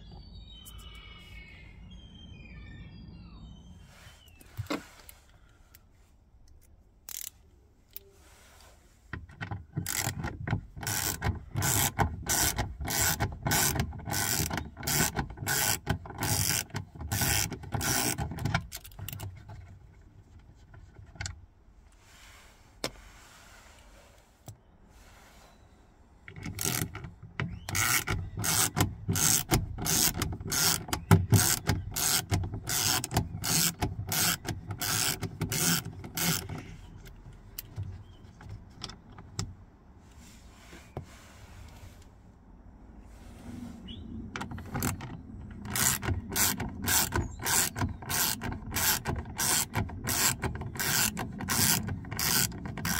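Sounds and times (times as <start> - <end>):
hand ratchet clicking: 7.1 - 7.4, 9.8 - 19.3, 26.3 - 37.8, 44.5 - 52.9.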